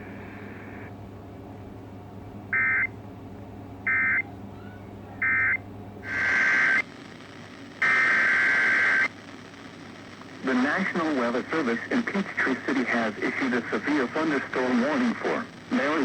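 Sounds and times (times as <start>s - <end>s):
steady radio hum: 0.0s - 1.0s, 2.5s - 2.9s, 3.8s - 16.0s.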